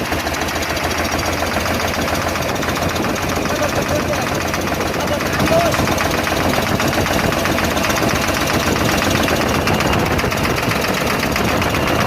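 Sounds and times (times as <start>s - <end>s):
truck diesel engine clattering: 0.0s - 12.0s.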